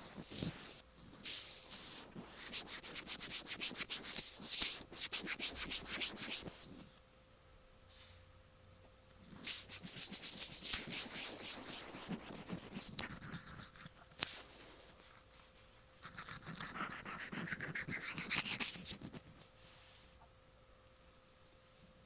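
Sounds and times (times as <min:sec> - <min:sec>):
scratching on earphone microphone: 0:09.3 - 0:14.8.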